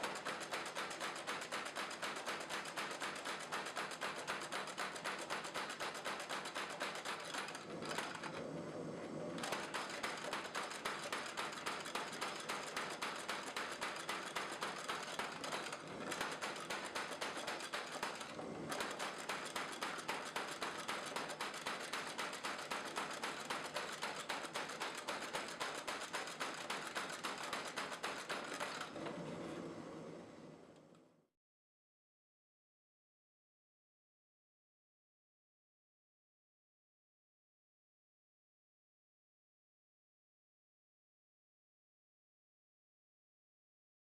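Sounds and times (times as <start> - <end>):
power hammer knocking: 9.4 - 28.9.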